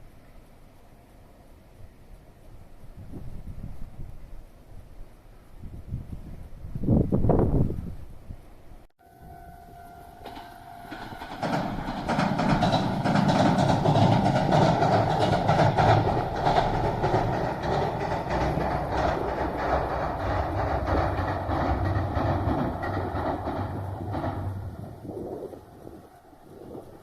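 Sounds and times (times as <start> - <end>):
train horn: 9.0 - 10.9
train wheel clatter: 9.3 - 27.0.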